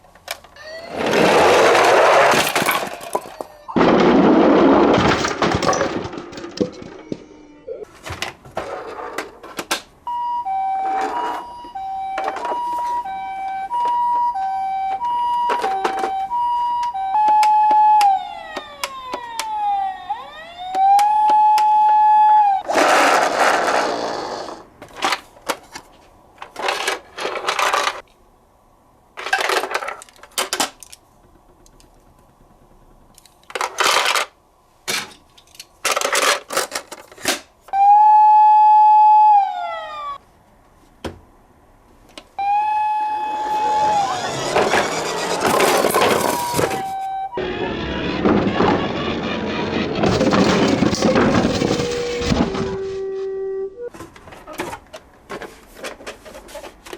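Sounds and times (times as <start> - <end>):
toy cars crashing into blocks: 0.3 - 7.3, 14.9 - 16.4, 22.6 - 25.8, 26.4 - 28.1, 29.2 - 31.0, 33.4 - 37.5, 43.2 - 53.0
ambulance two-tone siren: 10.0 - 22.7, 37.7 - 40.2, 42.4 - 54.0.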